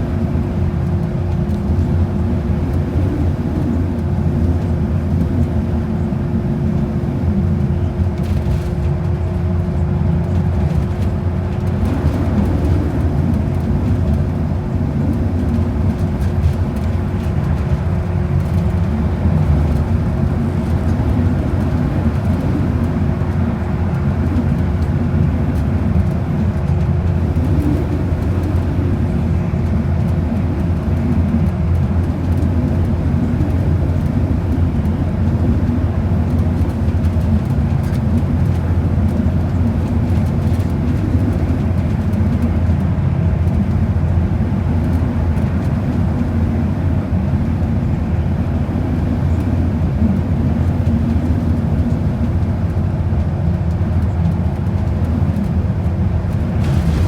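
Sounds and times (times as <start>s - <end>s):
bus engine and tyre rumble: 0.0s - 57.0s
faint steady hum: 11.7s - 42.8s.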